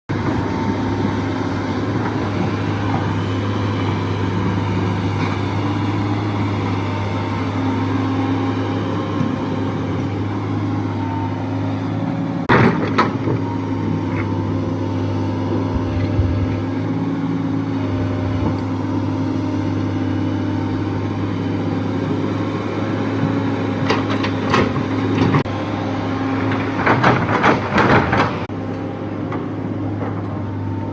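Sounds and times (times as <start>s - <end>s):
excavator diesel engine running: 0.1s - 30.9s
sharp knocks and rattles: 15.6s - 16.7s.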